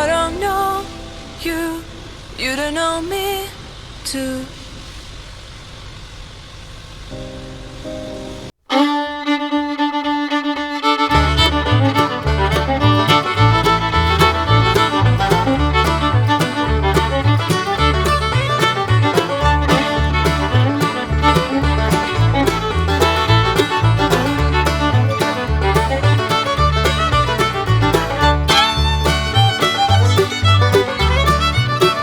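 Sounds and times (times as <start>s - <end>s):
upbeat fiddle tune: 8.7s - 32.0s
bass line: 11.1s - 32.0s
steady beat: 11.1s - 32.0s.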